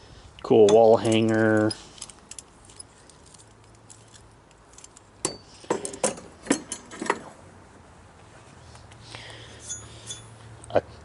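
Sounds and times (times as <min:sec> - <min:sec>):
metal tools clinking: 0:00.6 - 0:07.2, 0:09.5 - 0:10.4.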